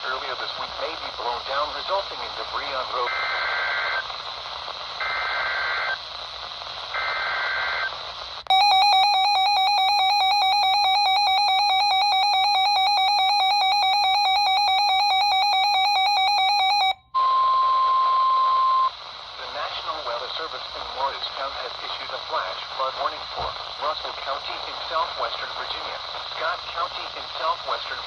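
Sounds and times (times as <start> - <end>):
radio hiss: 0.0 - 8.6, 18.4 - 28.0.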